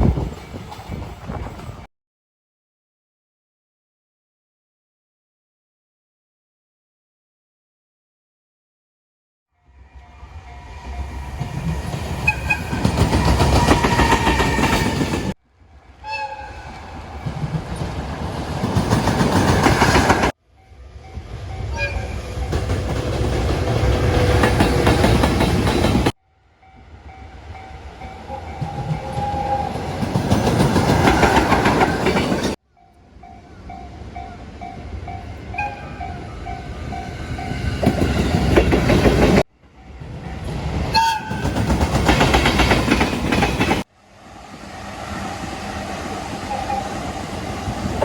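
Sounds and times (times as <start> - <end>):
train horn blast: 15.9 - 16.8, 21.7 - 22.3.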